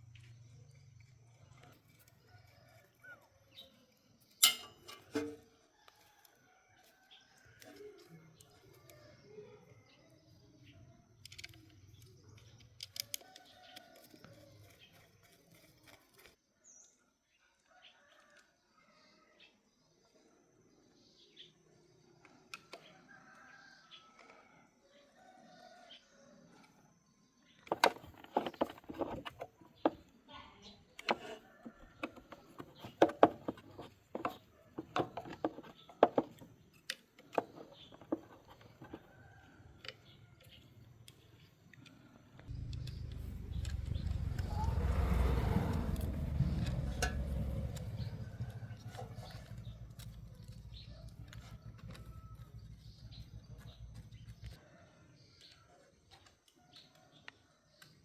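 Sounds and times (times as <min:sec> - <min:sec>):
hand tools clicking and knocking: 0:04.4 - 0:05.5, 0:27.7 - 0:30.1, 0:31.0 - 0:39.1.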